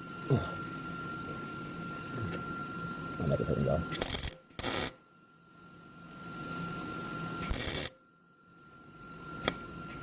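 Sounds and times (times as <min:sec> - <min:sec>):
welder arc bursts: 0:03.9 - 0:05.0, 0:07.4 - 0:08.0.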